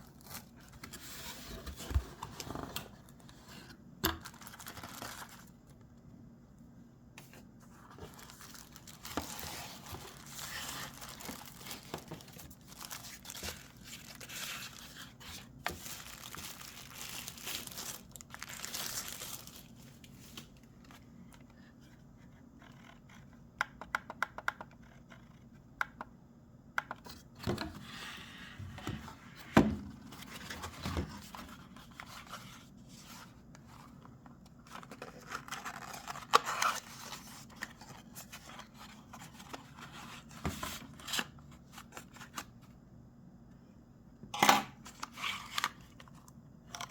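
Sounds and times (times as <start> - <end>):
packaging rustling and tearing: 4.2 - 5.6, 7.8 - 20.4, 34.6 - 42.5.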